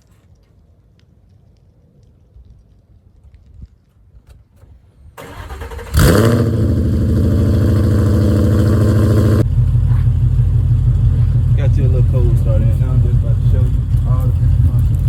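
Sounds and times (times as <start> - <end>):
car engine cranking: 5.2 - 15.0
engine flaring and idling loudly: 5.9 - 15.0.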